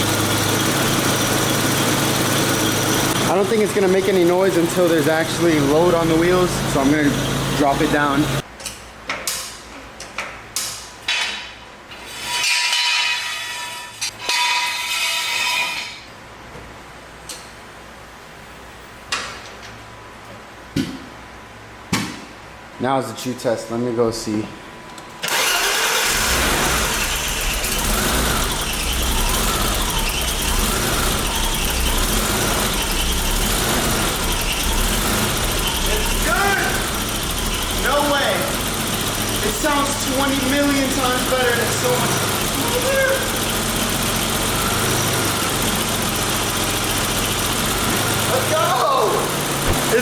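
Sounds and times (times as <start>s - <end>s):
car engine idling: 0.0s - 8.4s, 25.3s - 50.0s
faint power steering whine: 0.0s - 8.8s, 24.2s - 50.0s.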